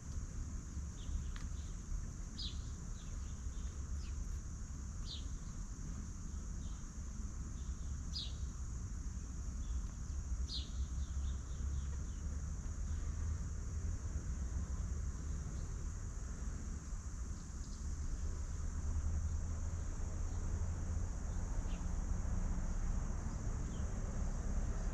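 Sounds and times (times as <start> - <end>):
constant low rumble: 0.0 - 24.9
high insect buzz: 2.4 - 12.2.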